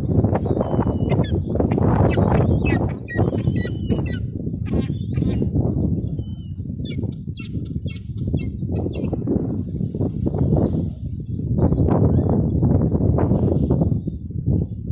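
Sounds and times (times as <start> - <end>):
gulls calling: 0.0 - 9.2.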